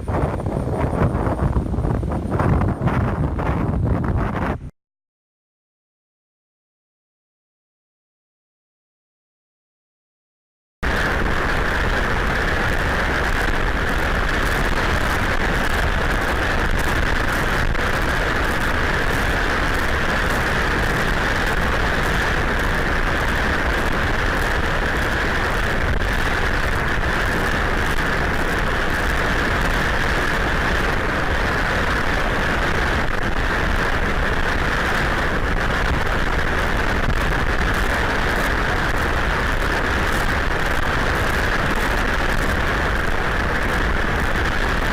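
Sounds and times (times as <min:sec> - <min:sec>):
hurricane wind: 0:00.0 - 0:04.7, 0:10.8 - 0:44.9
heavy rain: 0:10.8 - 0:44.9.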